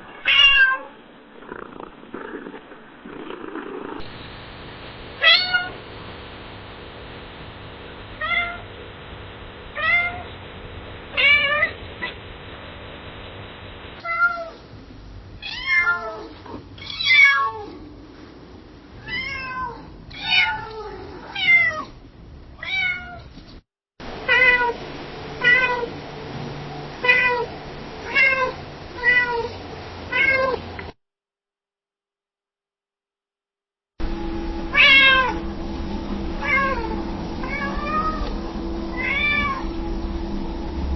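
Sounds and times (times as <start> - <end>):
cat meowing: 0.0 - 1.0, 5.2 - 5.8, 8.2 - 8.6, 14.0 - 14.6, 15.4 - 17.8, 19.0 - 21.9, 22.6 - 23.3, 27.0 - 29.5, 34.7 - 35.4, 38.9 - 39.6.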